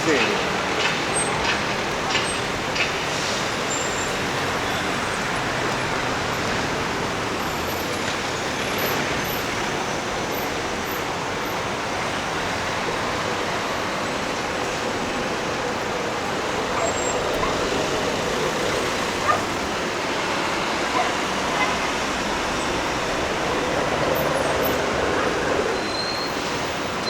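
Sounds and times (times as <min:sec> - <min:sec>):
street traffic passing: 0:00.0 - 0:27.0.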